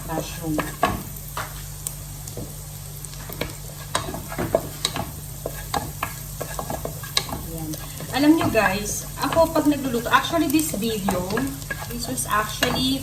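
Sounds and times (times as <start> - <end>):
onion sizzling in a frying pan: 0.0 - 13.0
utensil scraping a pan: 3.1 - 13.0.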